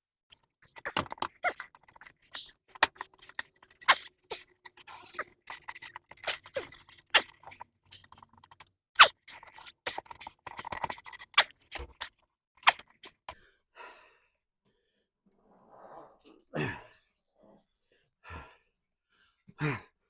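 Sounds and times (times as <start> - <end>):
strained grunt: 16.4 - 17.0.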